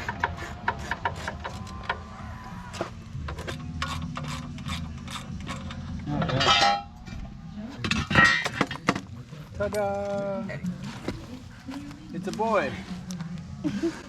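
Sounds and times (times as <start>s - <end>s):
ratchet clicking: 3.3s - 6.0s.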